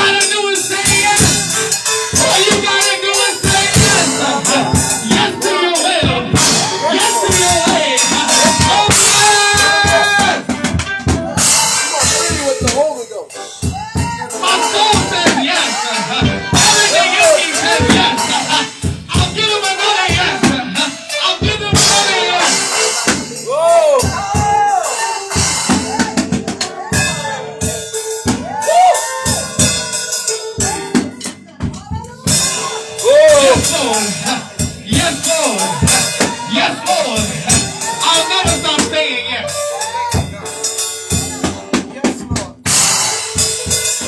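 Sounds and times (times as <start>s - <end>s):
bending pitched notes: 0.0s - 12.2s
people singing: 0.0s - 12.3s, 13.7s - 31.3s, 32.2s - 41.7s
keyboard or organ notes: 0.0s - 12.7s, 14.2s - 23.6s, 32.3s - 41.8s
drum kit beat: 0.0s - 44.0s
live church band music: 0.0s - 44.0s.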